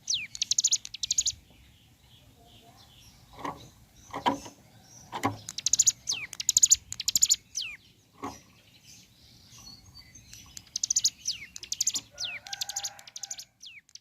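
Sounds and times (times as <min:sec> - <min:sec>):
bird rattling trills: 0:05.3 - 0:08.5, 0:10.4 - 0:13.6.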